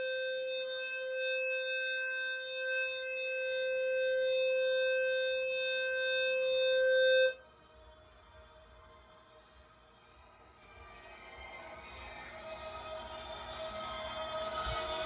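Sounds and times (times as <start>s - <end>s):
fire alarm low tone: 0.0s - 7.4s.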